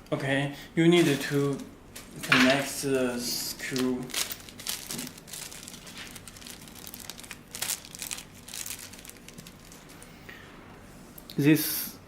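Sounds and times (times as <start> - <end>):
hardware crinkling and clicking: 1.0 - 2.7, 3.6 - 10.1.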